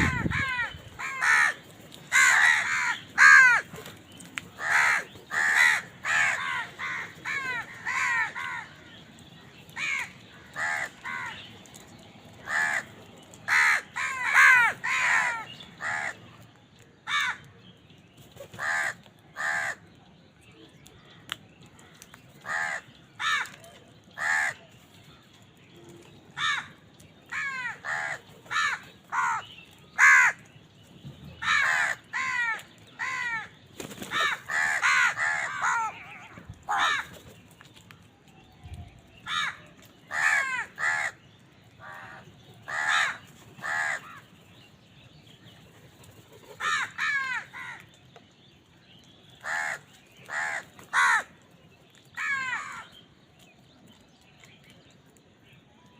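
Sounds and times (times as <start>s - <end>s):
crows cawing: 0.0s - 3.8s, 4.5s - 8.9s, 9.8s - 11.4s, 12.4s - 12.9s, 13.5s - 16.2s, 18.6s - 19.8s, 22.4s - 23.6s, 24.2s - 24.6s, 26.4s - 29.4s, 30.0s - 30.5s, 31.4s - 37.1s, 39.3s - 41.2s, 41.8s - 44.3s, 46.5s - 47.9s, 49.4s - 51.4s, 52.2s - 52.9s.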